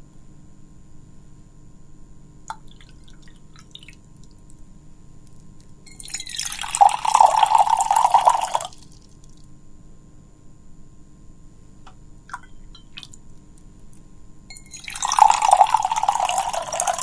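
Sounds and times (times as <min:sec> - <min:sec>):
water drips: 0:02.5 - 0:04.4, 0:12.3 - 0:13.2, 0:14.5 - 0:17.0
water pouring into a glass: 0:05.9 - 0:09.1, 0:14.5 - 0:17.0.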